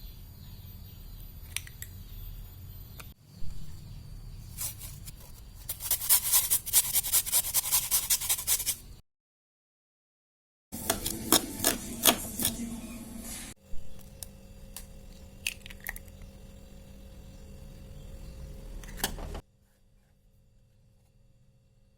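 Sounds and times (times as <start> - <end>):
low steady hum: 10.9 - 19.4.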